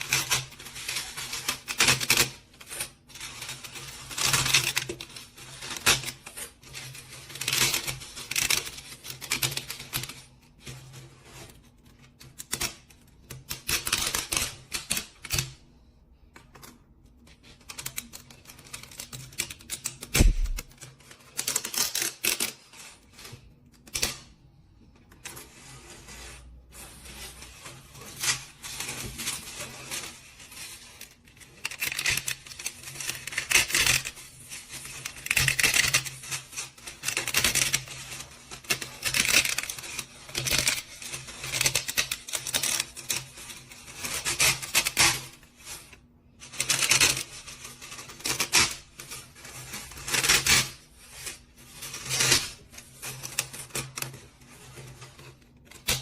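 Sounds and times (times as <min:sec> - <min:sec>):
low thump: 0:20.2 - 0:20.7.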